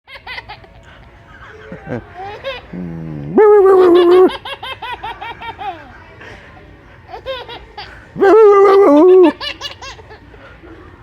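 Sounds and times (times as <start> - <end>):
baby laughing: 1.3 - 2.8, 3.4 - 5.9, 7.1 - 10.3.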